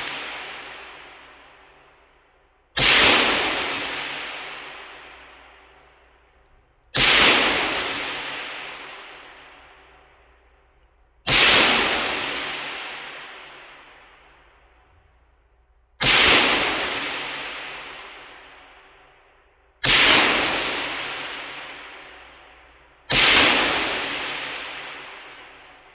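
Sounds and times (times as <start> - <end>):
rifle shots: 0.0 - 2.1, 2.8 - 5.9, 7.0 - 10.2, 11.3 - 14.4, 16.0 - 18.8, 19.8 - 25.9.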